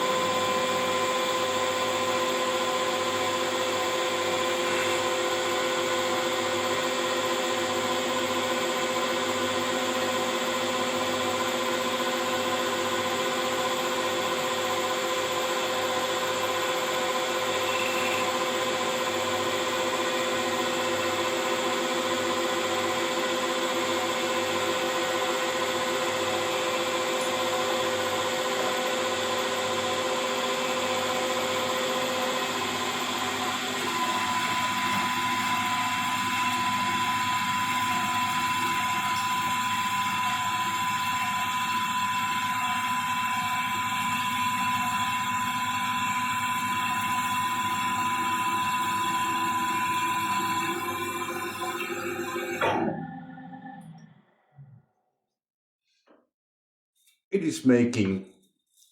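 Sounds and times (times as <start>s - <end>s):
metal lathe humming: 17.0s - 19.2s.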